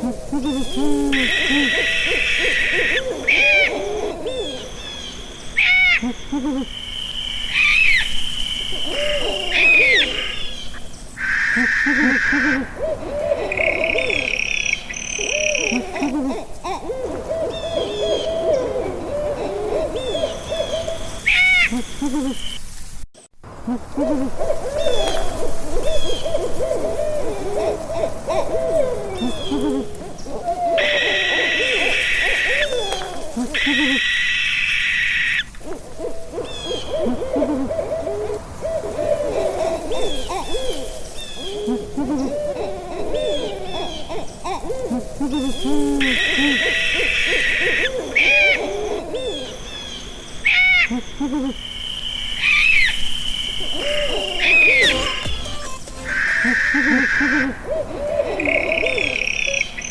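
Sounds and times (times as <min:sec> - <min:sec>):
owls hooting: 0:00.0 - 0:22.6, 0:23.6 - 0:59.9
harsh high bird call: 0:30.8 - 0:35.5, 0:50.4 - 0:57.6.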